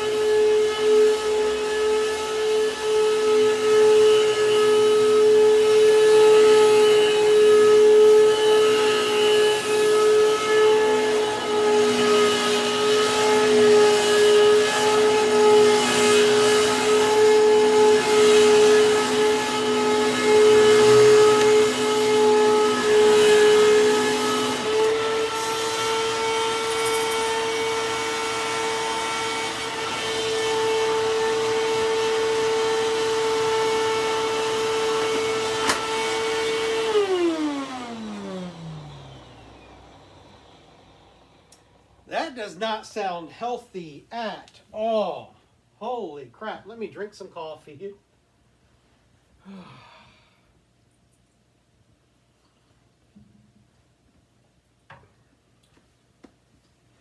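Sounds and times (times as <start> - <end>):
vacuum cleaner whining: 0.0 - 42.7.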